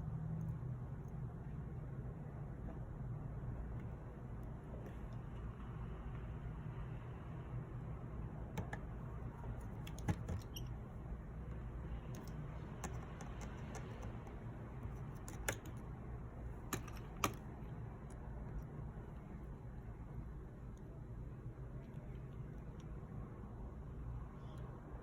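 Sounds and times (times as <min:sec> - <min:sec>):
steady low hum: 0:00.0 - 0:25.0
small tool clicks and taps: 0:12.1 - 0:15.9.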